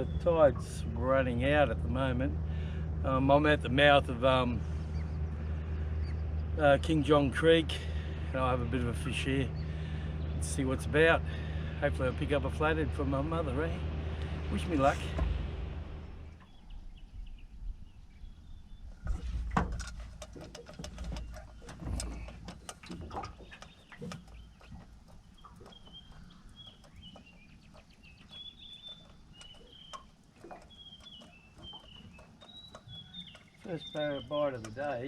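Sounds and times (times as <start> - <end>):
small birds chirping: 0.0 - 15.2, 16.0 - 35.0
handling clicks and knocks: 19.1 - 35.0.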